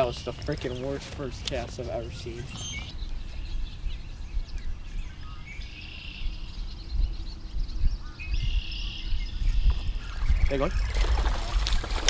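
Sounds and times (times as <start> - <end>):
birds chirping and calling: 0.0 - 11.9.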